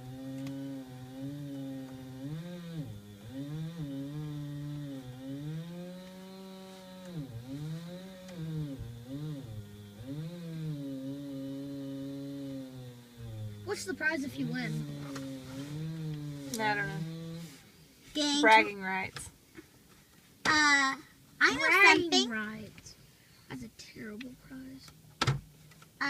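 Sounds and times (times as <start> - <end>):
chainsaw cutting into tree: 0.0 - 18.7.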